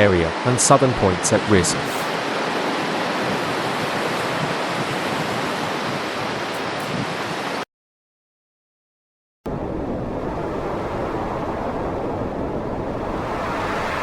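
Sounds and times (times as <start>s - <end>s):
heavy rain: 0.0s - 7.6s
hurricane wind: 0.0s - 7.6s, 9.5s - 14.0s.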